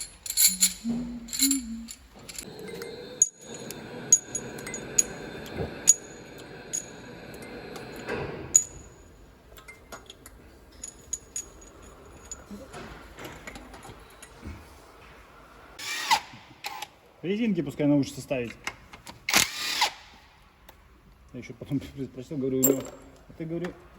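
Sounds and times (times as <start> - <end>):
metal tools clinking: 0.0 - 5.2, 9.6 - 13.6, 22.6 - 23.2.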